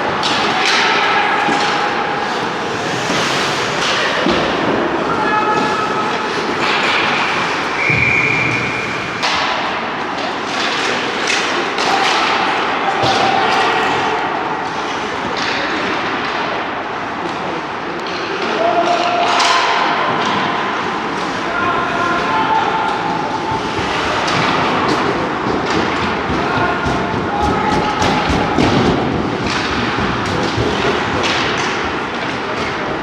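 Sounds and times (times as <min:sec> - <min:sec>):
people shouting: 0:00.2 - 0:08.8, 0:21.4 - 0:30.6
skates scraping ice: 0:00.2 - 0:16.2, 0:20.9 - 0:33.0.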